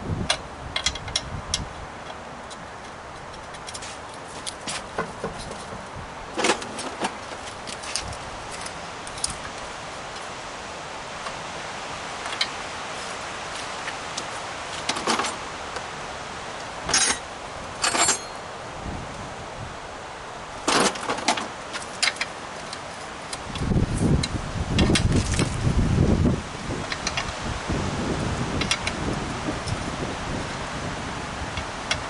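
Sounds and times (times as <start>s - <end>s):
steady background hiss: 0.0s - 32.0s
metal tools clinking and rattling: 16.9s - 17.2s, 17.8s - 18.5s.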